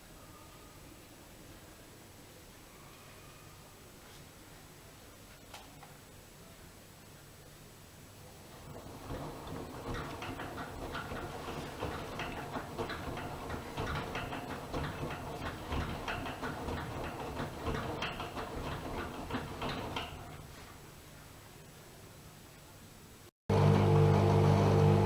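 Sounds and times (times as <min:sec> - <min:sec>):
washing machine hum: 0:08.2 - 0:21.6, 0:23.5 - 0:25.0
washing machine drum clicking and sloshing: 0:08.5 - 0:20.7.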